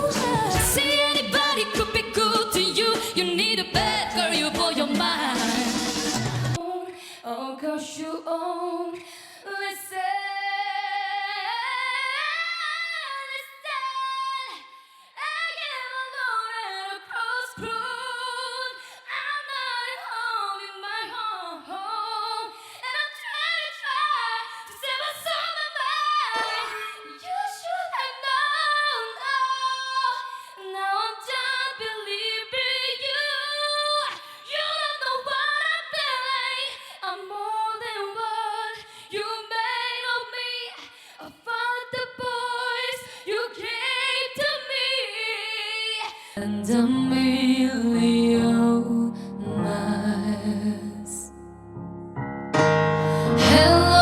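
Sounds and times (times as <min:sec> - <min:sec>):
woman singing solo: 0:00.0 - 0:05.7, 0:46.4 - 0:51.3, 0:53.1 - 0:54.0.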